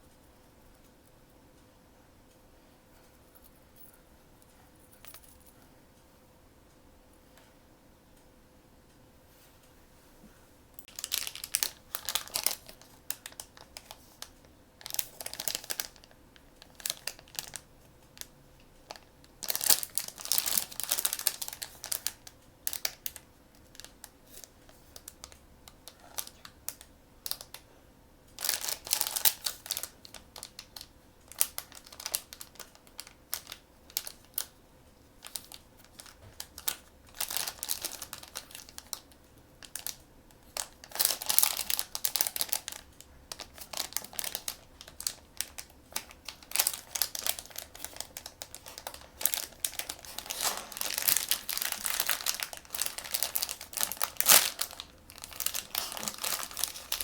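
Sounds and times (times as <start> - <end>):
packaging crinkling and rustling: 10.8 - 27.6, 28.3 - 34.5, 35.2 - 57.0.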